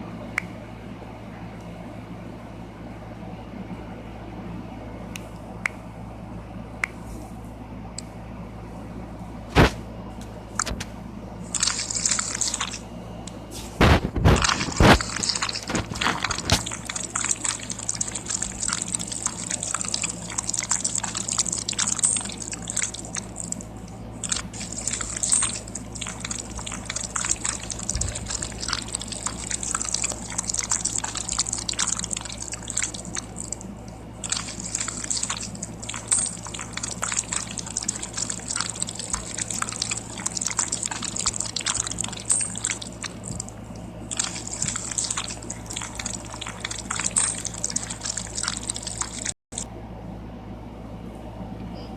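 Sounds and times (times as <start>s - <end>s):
slime squelching and popping: 11.5s - 12.8s, 13.8s - 49.4s.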